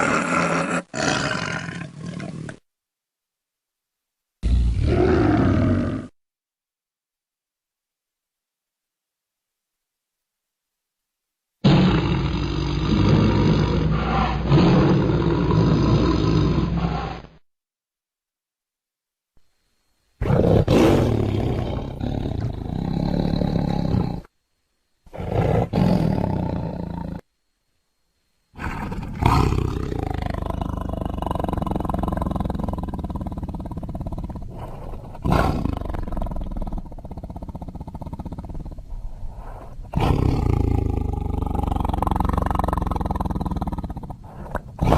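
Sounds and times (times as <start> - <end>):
tiger growling: 0.0 - 2.6, 11.7 - 17.4, 20.2 - 24.3, 25.1 - 27.2, 28.6 - 44.9
tiger roar: 0.0 - 2.6, 4.4 - 6.2, 11.6 - 17.4, 20.2 - 24.3, 25.1 - 27.2, 28.6 - 44.9.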